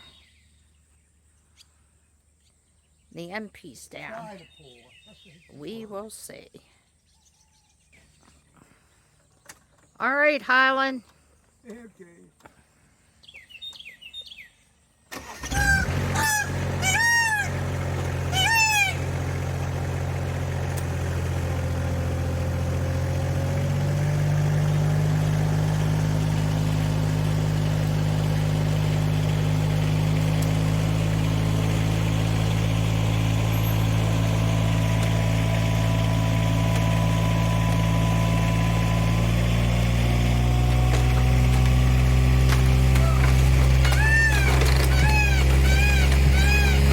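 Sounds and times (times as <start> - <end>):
skid-steer engine running: 15.1 - 46.9
peacock calling: 15.2 - 20.3, 42.6 - 46.9.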